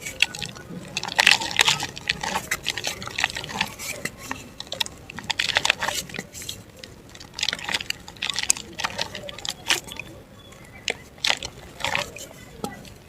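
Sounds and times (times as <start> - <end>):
dry mud crumbling: 0.0 - 13.0.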